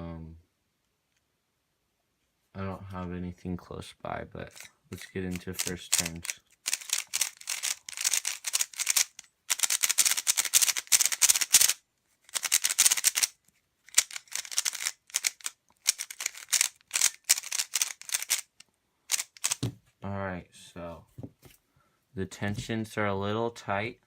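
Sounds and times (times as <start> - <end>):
rapid plastic clicking of puzzle cube: 4.5 - 19.7.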